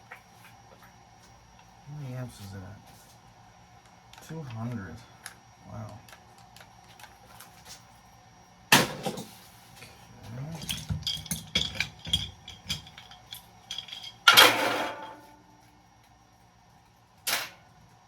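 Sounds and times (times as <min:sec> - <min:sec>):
metal pieces clinking: 0:10.6 - 0:15.1.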